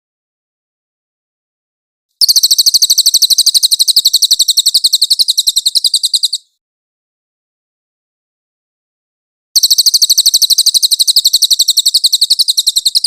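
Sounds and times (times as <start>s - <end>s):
bird high-pitched trill: 2.2s - 6.6s, 9.6s - 13.0s.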